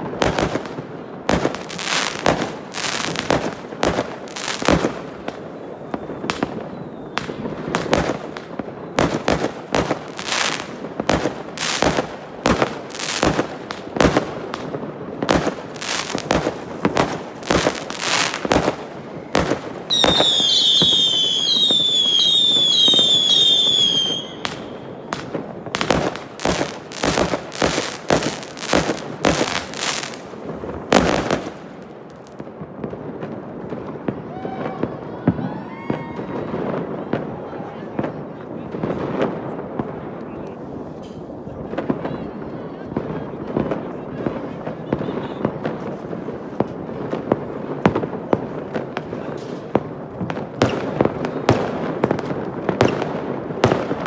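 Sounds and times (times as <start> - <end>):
fireworks bangs and pops: 0.0 - 54.0
whistling firework screeching: 5.4 - 8.1, 15.8 - 24.9.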